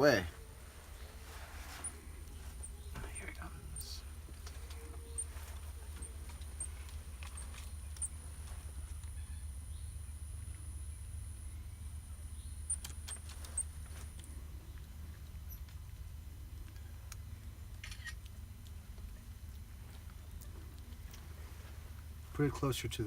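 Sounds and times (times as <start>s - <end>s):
thin high steady tone: 0.0s - 13.7s
steady low hum: 0.0s - 23.0s
sharp clicks: 1.8s - 9.2s, 12.6s - 14.9s, 16.6s - 18.8s.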